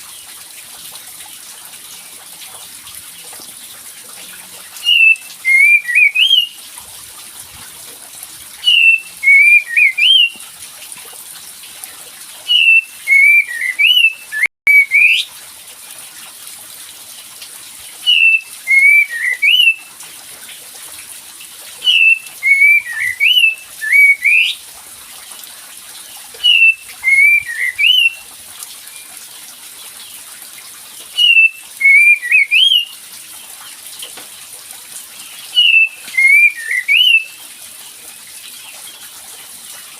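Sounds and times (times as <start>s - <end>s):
songbird whistled song recording: 4.8s - 6.6s, 8.6s - 10.4s, 12.5s - 15.3s, 18.0s - 19.9s, 21.8s - 24.6s, 26.4s - 28.2s, 31.2s - 32.9s, 35.5s - 37.4s.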